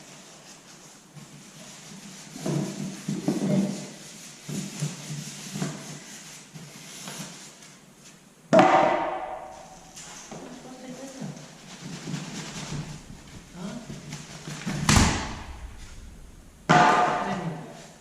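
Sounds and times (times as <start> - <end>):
loud ringing bang: 8.6 - 9.9, 14.9 - 17.5.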